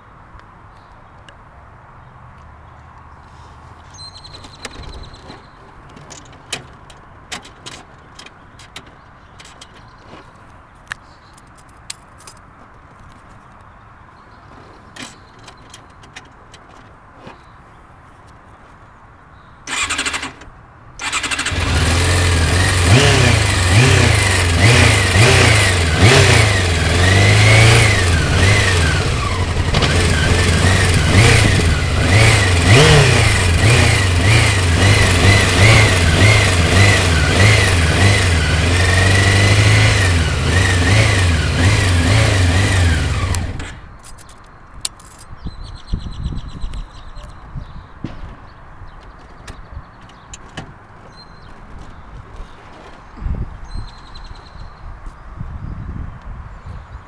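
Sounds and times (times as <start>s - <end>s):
motorcycle engine revving: 19.7s - 44.2s
motorcycle starter cranking: 19.7s - 45.2s.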